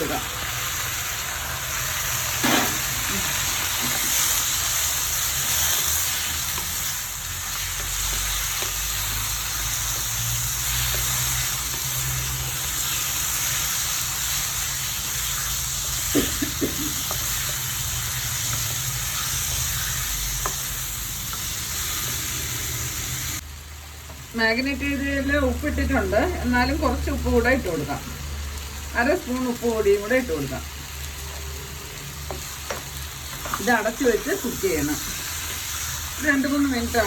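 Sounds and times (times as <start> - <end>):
chicken sizzling in a pan: 0.0 - 37.0.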